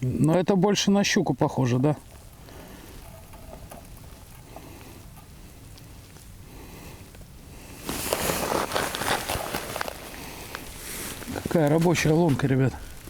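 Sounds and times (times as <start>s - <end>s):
faint outdoor background: 0.0s - 13.0s
footsteps crunching on snow: 7.8s - 13.0s.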